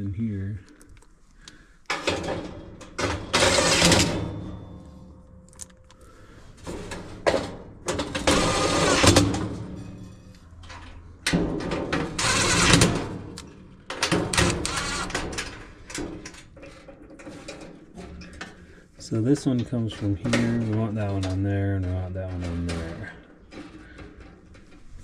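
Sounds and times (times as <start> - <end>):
cordless drill whirring: 14.4 - 15.2.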